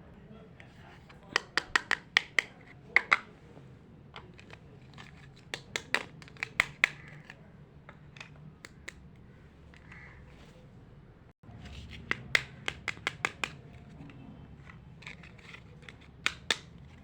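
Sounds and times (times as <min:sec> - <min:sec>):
plastic toy pieces clicking: 0:01.2 - 0:03.3, 0:04.2 - 0:07.4, 0:12.1 - 0:17.0.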